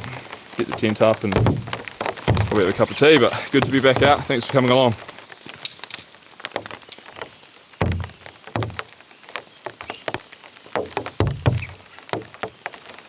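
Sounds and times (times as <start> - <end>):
dull thuds: 0.0 - 4.8, 7.8 - 8.9, 9.8 - 12.8
rain falling: 0.0 - 13.0
heavy drops tapping: 0.6 - 5.0, 7.8 - 8.9, 9.7 - 12.8.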